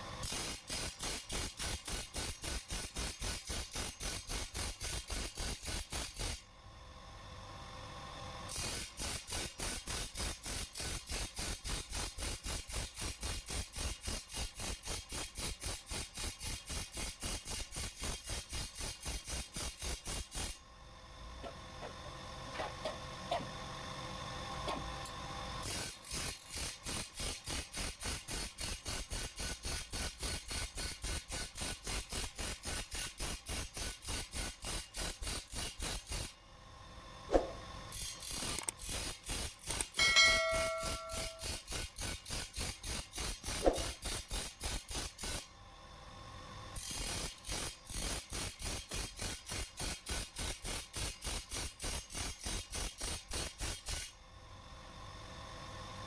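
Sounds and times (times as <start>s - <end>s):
hand file filing steel blade: 39.7s - 43.9s
short metallic ring: 40.0s - 41.6s.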